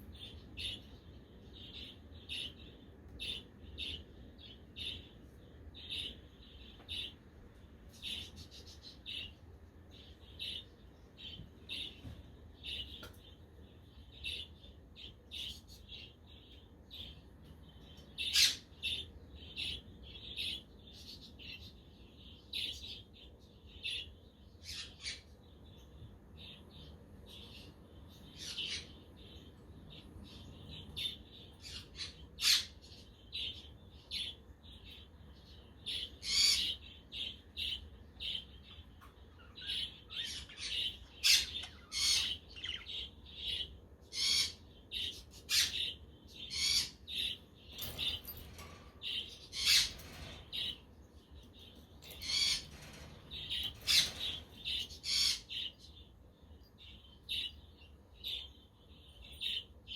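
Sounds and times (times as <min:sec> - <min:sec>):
budgerigars chattering and chirping: 0:39.4 - 0:50.8, 0:52.0 - 0:55.8.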